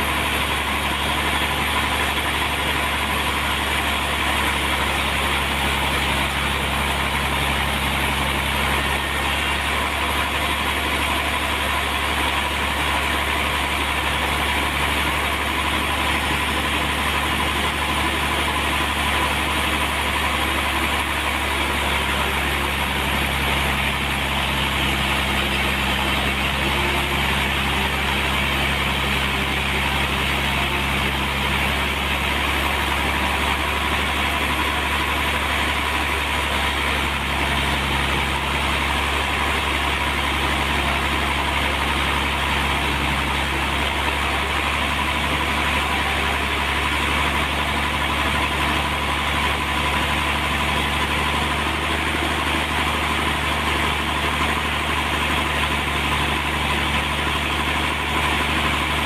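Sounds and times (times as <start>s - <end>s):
motor-driven saw droning: 0.0s - 59.0s.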